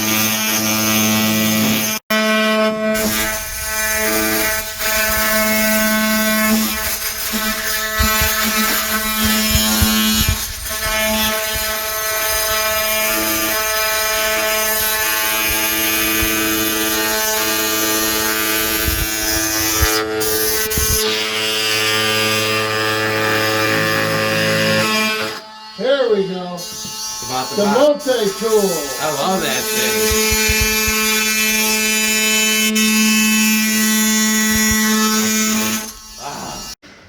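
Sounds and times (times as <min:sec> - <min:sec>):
oscillating multi-tool buzzing: 0:00.0 - 0:36.8
knocks: 0:03.6 - 0:12.6, 0:29.8 - 0:31.4.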